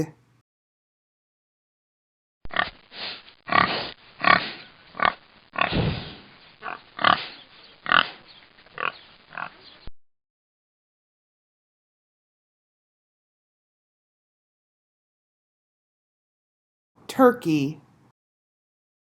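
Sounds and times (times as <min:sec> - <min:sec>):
pig grunting: 0:03.5 - 0:08.2, 0:08.8 - 0:09.6.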